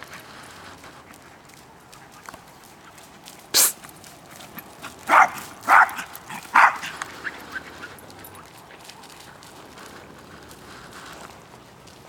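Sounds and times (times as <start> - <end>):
dog barking: 5.0 - 7.4.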